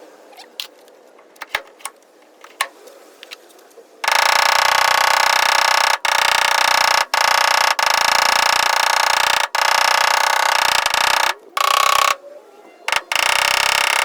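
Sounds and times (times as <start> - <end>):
whining power tool: 4.1 - 12.2, 12.9 - 14.0.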